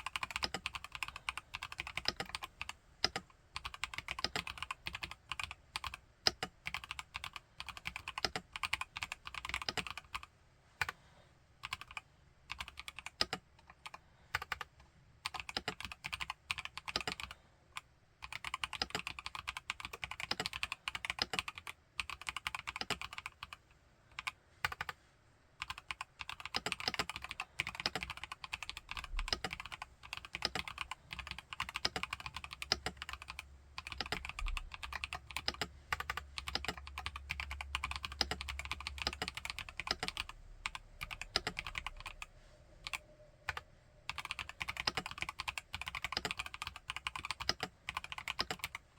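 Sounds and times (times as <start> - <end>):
mechanical keyboard typing: 0.0 - 11.0, 11.6 - 25.0, 25.6 - 48.9.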